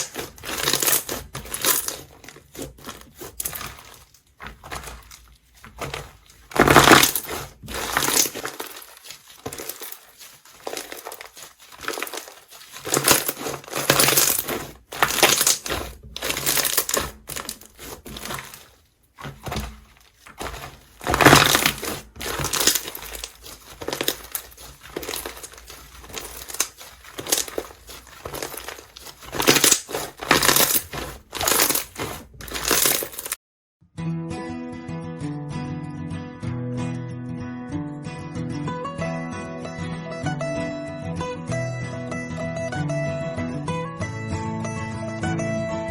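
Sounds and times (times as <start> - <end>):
slime squishing and crackling: 0.0 - 33.4.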